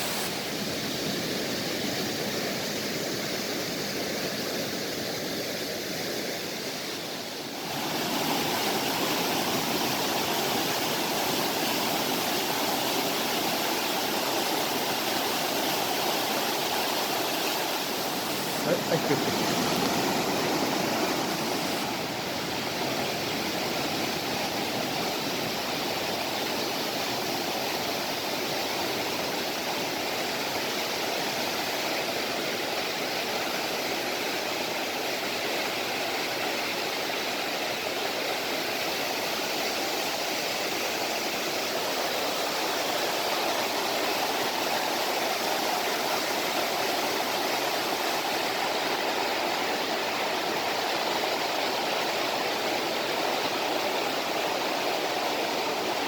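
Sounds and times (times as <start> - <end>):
stream water rushing: 0.0 - 56.0.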